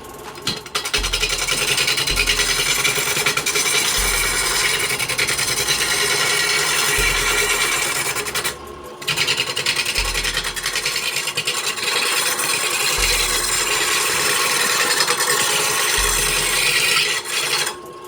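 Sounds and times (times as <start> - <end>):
deep bass note in music: 0.0 - 9.0, 9.9 - 11.1, 13.0 - 14.9, 15.7 - 17.3
lathe tool scraping wood: 0.0 - 18.0.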